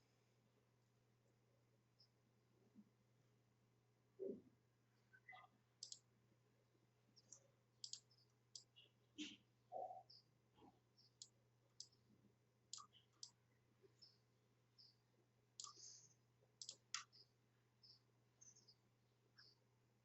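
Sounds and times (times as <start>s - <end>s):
computer mouse clicks: 5.3s - 6.1s, 7.2s - 9.3s, 11.0s - 12.0s, 12.7s - 13.4s, 15.6s - 16.0s, 16.6s - 17.3s.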